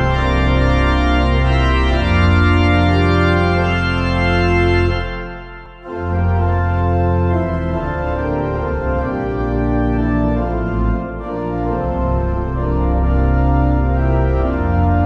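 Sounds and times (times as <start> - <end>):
organ playing sustained chords: 0.0 - 15.0.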